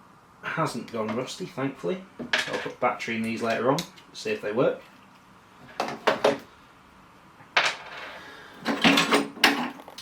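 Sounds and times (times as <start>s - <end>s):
tools knocking and clattering: 2.2s - 2.8s, 5.7s - 6.4s, 8.6s - 9.9s.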